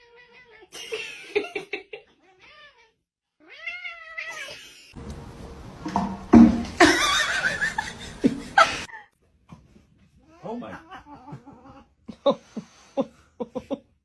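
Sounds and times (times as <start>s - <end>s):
cat meowing: 2.2s - 4.9s.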